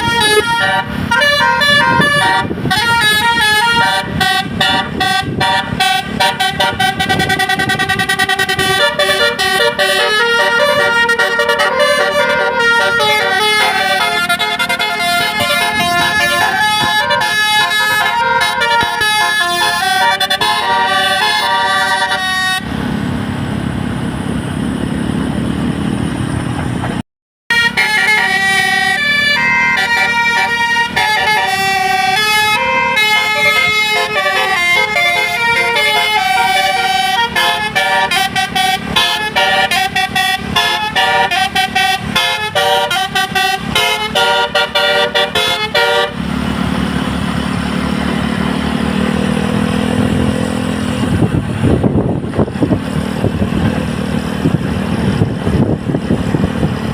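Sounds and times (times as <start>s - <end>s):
multi-tone air horn tune: 0.0s - 22.7s, 27.5s - 46.2s
bus engine: 0.0s - 56.9s
road noise: 0.0s - 56.9s.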